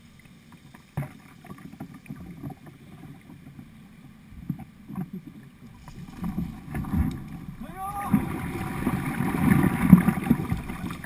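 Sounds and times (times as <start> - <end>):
river water noise: 0.0 - 11.0
paddle splashes: 4.9 - 11.0.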